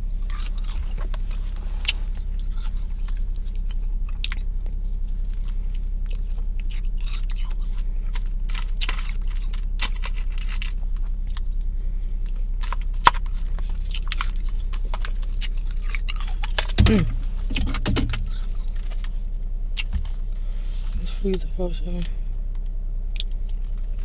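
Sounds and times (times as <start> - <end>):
low hum inside car: 0.0 - 24.0
ice being chewed: 0.1 - 11.5, 12.3 - 19.1.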